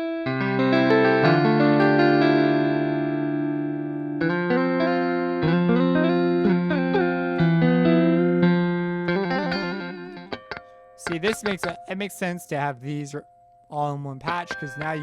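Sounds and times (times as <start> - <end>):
electric guitar notes: 0.0 - 15.0.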